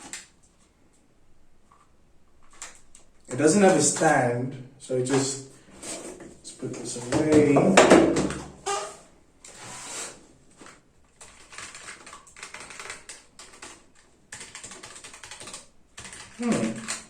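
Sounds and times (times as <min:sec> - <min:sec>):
mechanical keyboard typing: 0:11.2 - 0:17.0.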